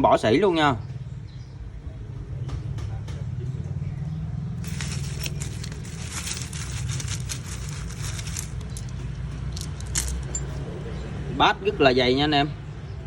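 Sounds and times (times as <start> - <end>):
metal parts clinking and rattling: 4.6 - 10.7.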